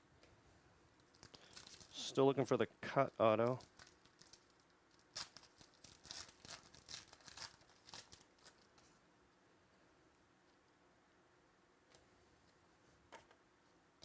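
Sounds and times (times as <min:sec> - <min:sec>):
trading cards and packaging rustling: 0:01.0 - 0:02.2, 0:03.2 - 0:09.0.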